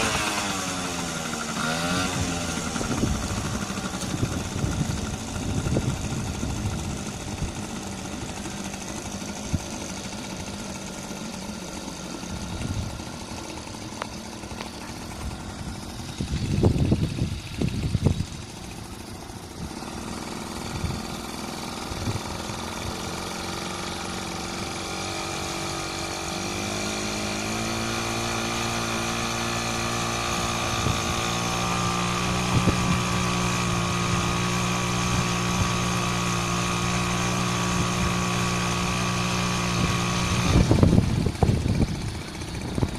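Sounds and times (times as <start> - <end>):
loud noisy rumble: 0.0 - 42.9
outboard motor running: 0.0 - 42.9.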